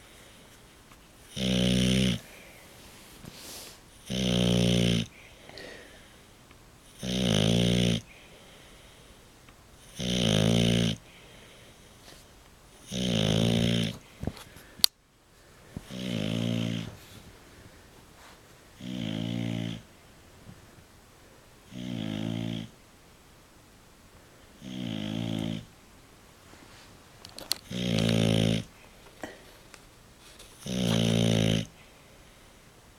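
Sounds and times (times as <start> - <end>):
dog snoring: 1.3 - 2.5, 3.5 - 5.2, 6.8 - 8.1, 9.8 - 11.6, 12.8 - 14.1, 15.8 - 17.2, 18.8 - 19.9, 21.6 - 22.8, 24.6 - 25.7, 27.6 - 28.8, 30.6 - 31.9.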